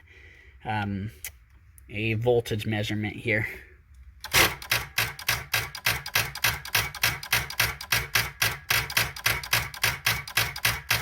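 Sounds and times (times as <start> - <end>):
car starter clicking rapidly: 4.2 - 11.0.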